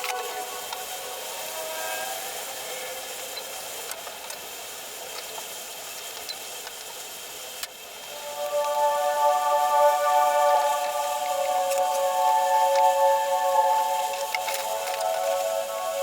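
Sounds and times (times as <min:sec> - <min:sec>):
faint music tones: 0:07.9 - 0:16.0.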